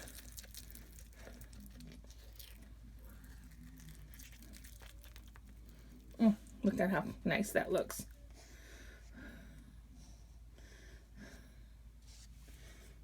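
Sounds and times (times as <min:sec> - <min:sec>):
rustling and crinkling of materials: 0:00.0 - 0:06.7.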